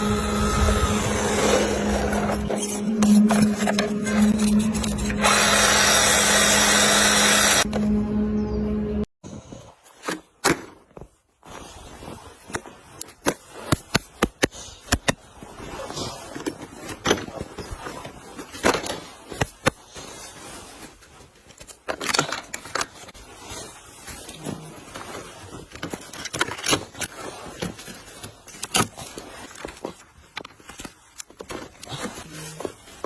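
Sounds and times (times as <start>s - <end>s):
toy car tyres scraping pavement: 0.0s - 7.8s.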